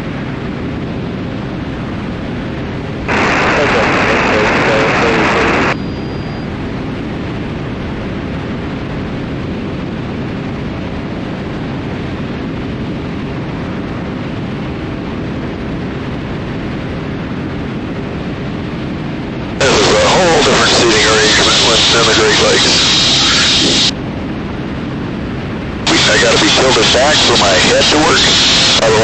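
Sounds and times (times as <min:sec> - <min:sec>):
aircraft engines and propellers droning: 0:00.0 - 0:29.0
cockpit audio: 0:03.1 - 0:05.8, 0:19.6 - 0:23.9, 0:25.9 - 0:29.0.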